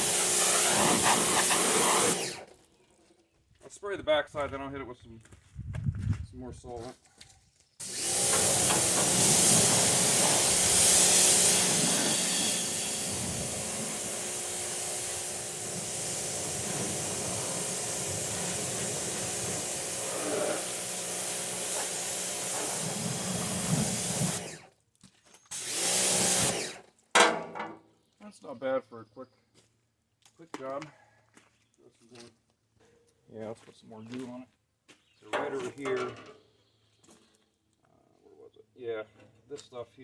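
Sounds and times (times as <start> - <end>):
pressure washer water jet hissing: 0.0 - 2.4, 7.8 - 24.6, 25.5 - 26.8
pump humming: 0.0 - 2.4, 7.8 - 24.6.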